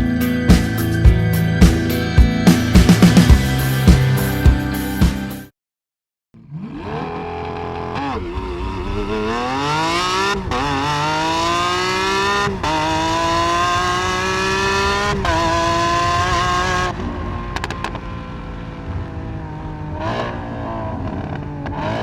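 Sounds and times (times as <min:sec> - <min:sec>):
car engine accelerating: 0:06.4 - 0:22.0.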